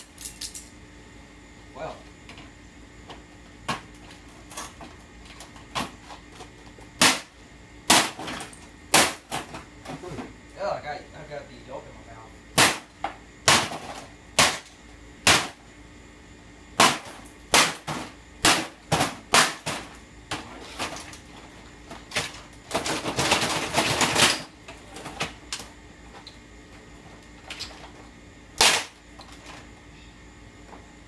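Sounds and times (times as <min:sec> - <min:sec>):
hammer smashing amplifier: 0:12.6 - 0:15.6, 0:16.8 - 0:19.9.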